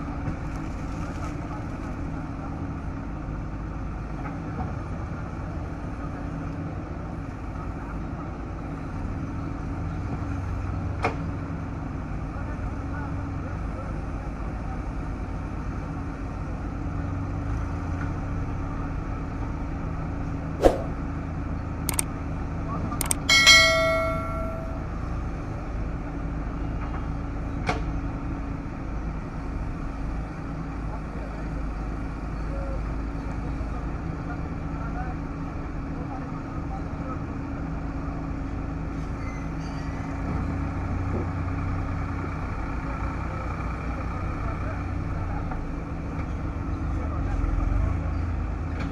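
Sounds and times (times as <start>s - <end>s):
heavy diesel engine running: 0.0s - 48.9s.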